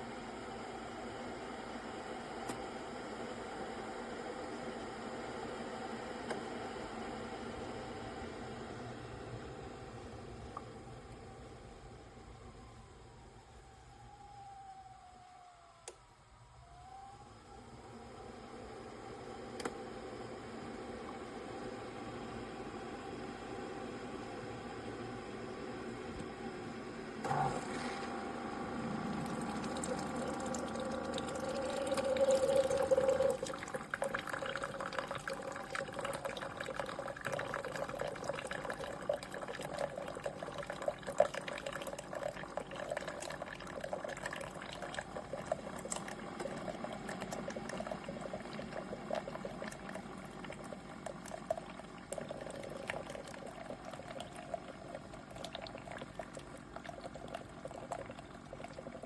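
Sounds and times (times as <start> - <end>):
coffee maker humming: 0.0 - 12.9, 17.5 - 59.0
coffee trickling into cup: 28.8 - 59.0.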